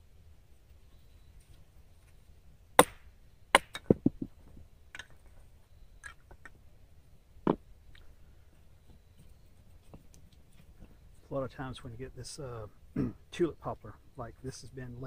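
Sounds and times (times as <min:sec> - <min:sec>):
wooden knocks: 0:03.6 - 0:04.3.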